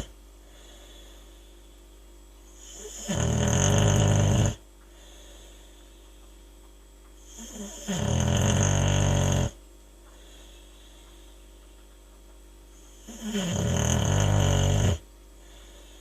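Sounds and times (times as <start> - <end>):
dog snoring: 0.0 - 1.2, 2.5 - 5.3, 7.2 - 9.6, 12.8 - 16.0.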